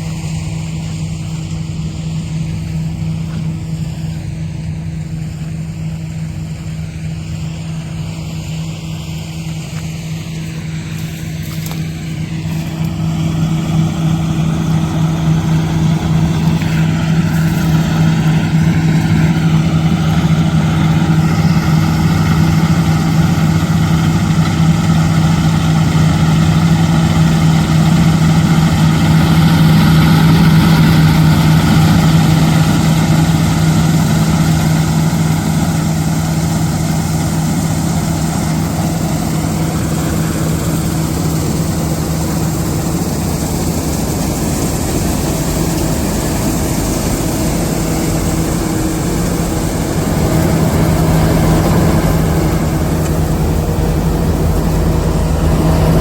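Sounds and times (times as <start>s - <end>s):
combine harvester diesel engine running: 0.0s - 56.0s.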